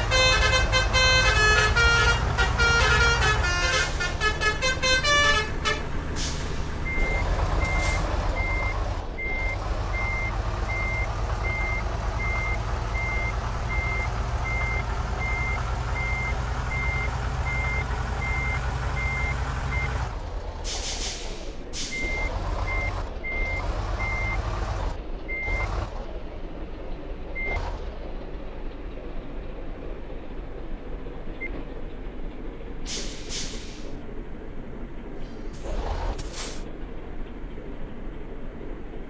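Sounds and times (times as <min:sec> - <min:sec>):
low engine rumble: 0:00.0 - 0:39.0
reversing beeper: 0:06.2 - 0:20.1
brake air hissing: 0:32.9 - 0:34.0, 0:35.2 - 0:36.7.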